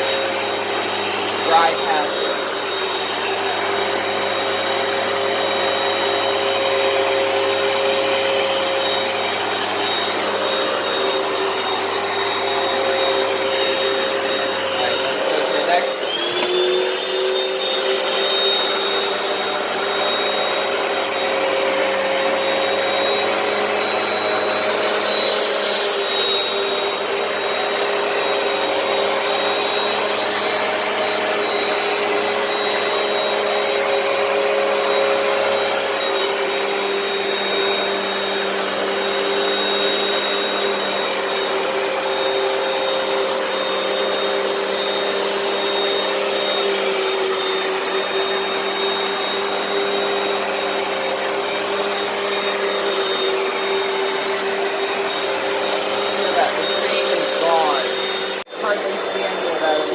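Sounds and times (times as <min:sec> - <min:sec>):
carpet cleaner motor whine: 0:00.0 - 0:59.9.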